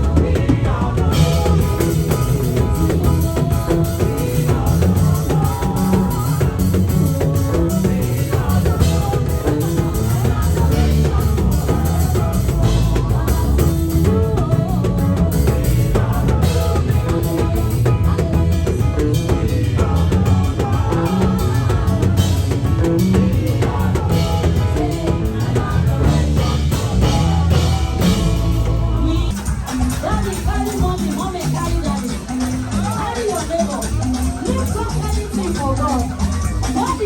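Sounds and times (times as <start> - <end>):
heavy bass: 0.0 - 32.9
drum kit beat: 0.0 - 34.0
gospel band music: 0.0 - 37.0.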